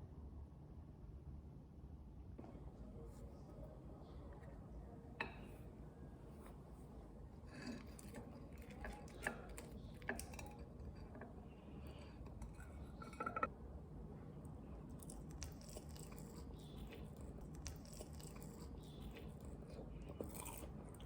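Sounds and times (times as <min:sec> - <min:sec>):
tableware clicks and clinks: 0:12.4 - 0:13.5.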